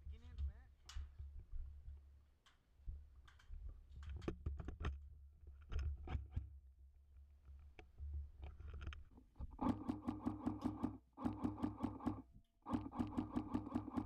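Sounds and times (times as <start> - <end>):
motor and gearbox buzz: 9.6 - 14.0.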